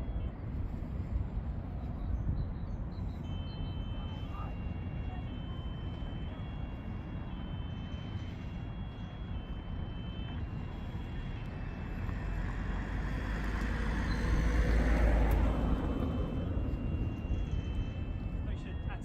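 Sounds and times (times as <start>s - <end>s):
low traffic rumble: 0.0s - 19.0s
vehicle passing close by: 11.5s - 18.4s.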